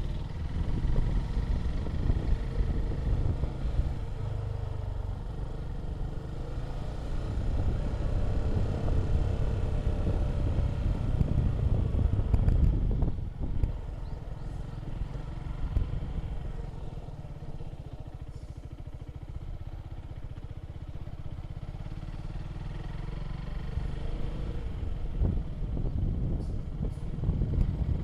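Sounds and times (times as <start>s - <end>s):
vehicle engine pulsing at low revs: 0.0s - 28.0s.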